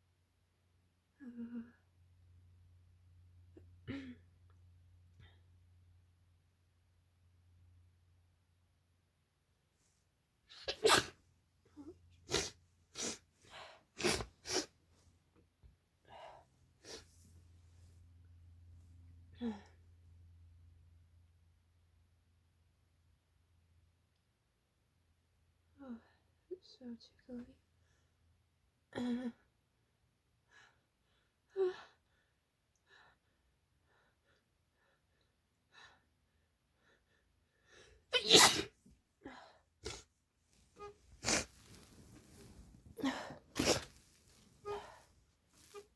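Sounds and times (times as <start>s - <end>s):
woman sneezing: 10.5s - 11.2s, 38.1s - 38.8s, 43.0s - 44.0s
soft breaths: 39.2s - 45.9s.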